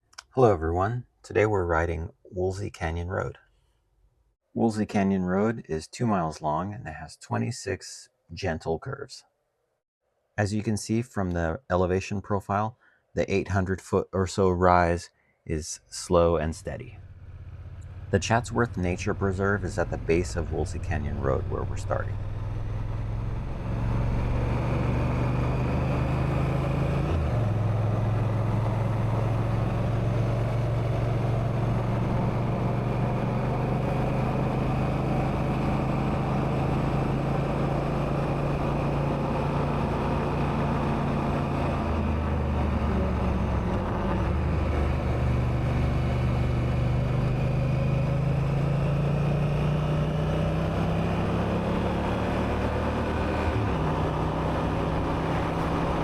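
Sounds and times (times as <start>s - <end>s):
motorcycle engine revving: 17.0s - 56.0s.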